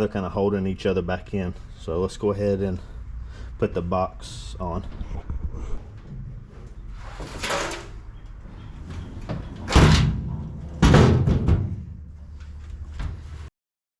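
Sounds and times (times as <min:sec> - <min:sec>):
metal toolbox scraping: 0:05.8 - 0:12.0
metal toolbox banging: 0:07.2 - 0:08.0, 0:09.2 - 0:12.1.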